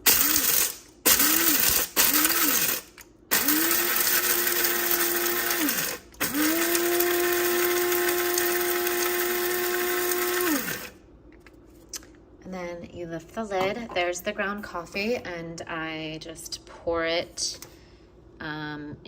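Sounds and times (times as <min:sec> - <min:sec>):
coffee grinder grinding beans: 0:00.0 - 0:11.0.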